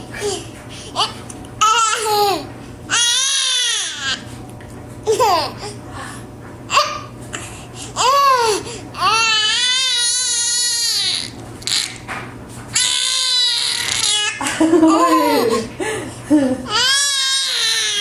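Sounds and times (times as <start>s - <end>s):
baby squealing and wailing: 8.0s - 12.0s, 12.8s - 14.4s.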